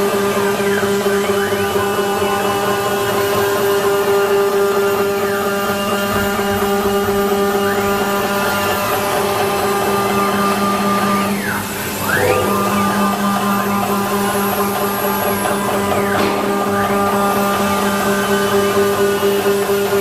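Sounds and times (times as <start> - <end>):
wood router spindle whine: 0.0 - 20.0
higher whine dipping and rising: 11.9 - 18.1.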